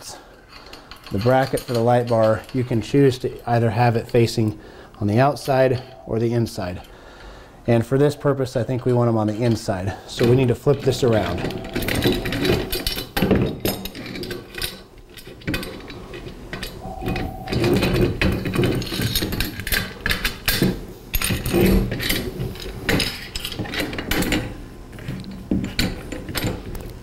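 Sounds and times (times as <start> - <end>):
metal hardware clanking and scraping: 0.4 - 4.5, 8.1 - 26.7.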